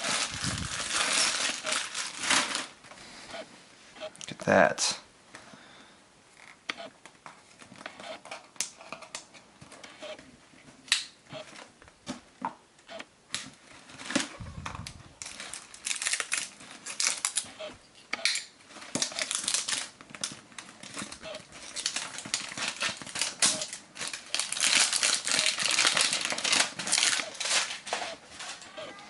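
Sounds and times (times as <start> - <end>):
paper rustling and crinkling: 0.0 - 2.8, 13.6 - 17.5, 18.7 - 29.0.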